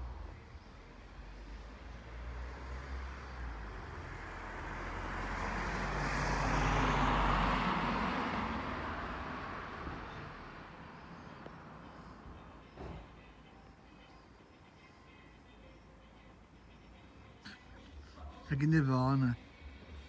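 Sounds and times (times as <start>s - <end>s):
motor vehicle passing by: 0.8s - 12.6s.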